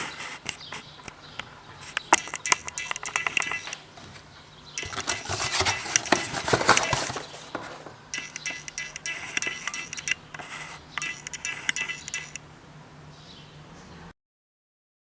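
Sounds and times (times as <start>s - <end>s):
music with clicks and high tones: 2.1s - 3.9s, 8.1s - 12.4s.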